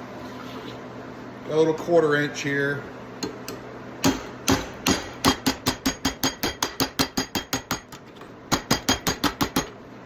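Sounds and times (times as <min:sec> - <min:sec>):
hammer striking steel bar: 0:04.0 - 0:07.9, 0:08.5 - 0:09.7.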